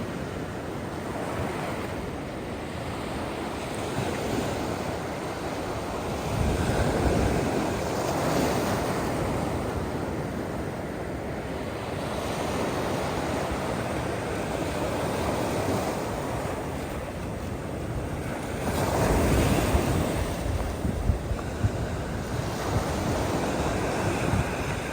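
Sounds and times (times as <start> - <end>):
ocean surf breaking: 0.0 - 24.9.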